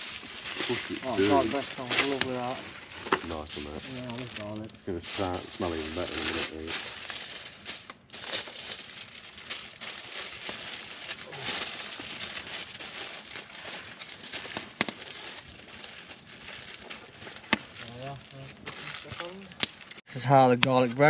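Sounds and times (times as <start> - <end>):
campfire crackling: 0.0 - 20.0
sharp fire pops: 14.5 - 15.2.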